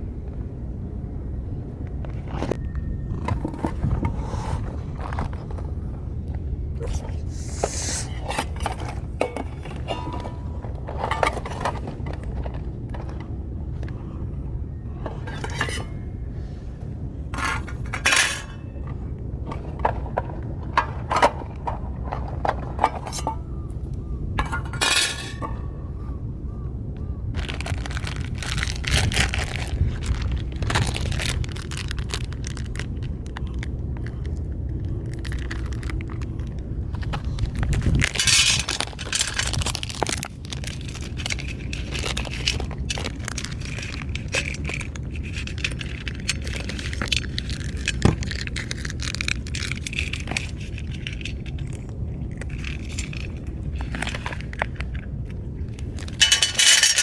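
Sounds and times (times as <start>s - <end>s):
steady low rumble: 0.0s - 57.0s
metal tins clinking and scraping: 7.3s - 13.3s, 15.0s - 16.5s, 17.3s - 23.7s, 24.4s - 25.7s, 38.1s - 54.6s, 56.0s - 57.0s.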